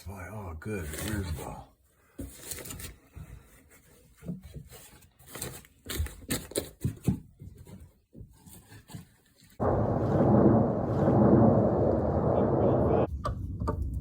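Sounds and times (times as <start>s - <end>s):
loud steady rushing noise: 9.6s - 13.1s.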